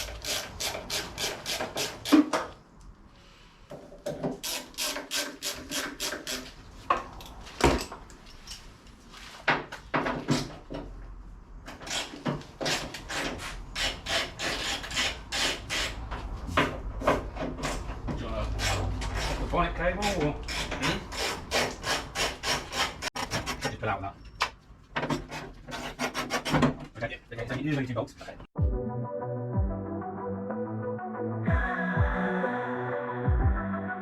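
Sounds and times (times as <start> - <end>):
hand ratchet clicking: 0.0 - 2.3, 4.4 - 6.5.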